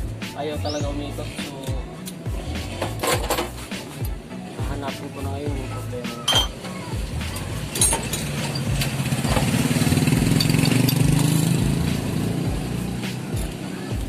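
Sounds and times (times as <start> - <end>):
small engine passing by: 7.4 - 14.0.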